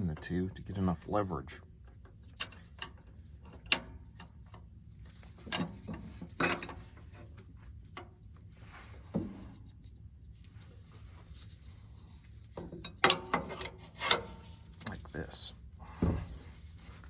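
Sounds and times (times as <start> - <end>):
metal wrenches clicking and clanking: 12.8 - 15.0.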